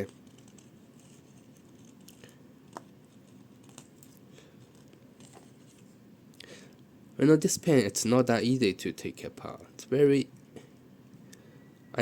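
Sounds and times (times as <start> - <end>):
handling small pencil parts: 0.0 - 5.9.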